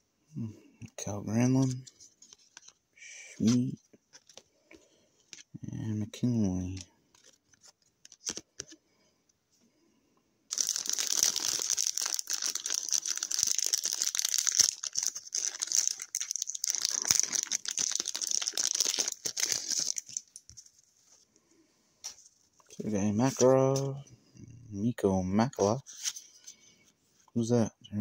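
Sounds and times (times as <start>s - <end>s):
wrapper crinkling: 10.5s - 20.8s.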